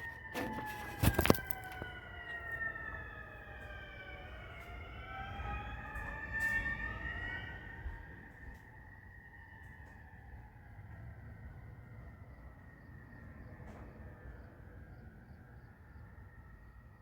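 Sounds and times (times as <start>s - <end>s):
ambulance sirens wailing: 0.0s - 17.0s.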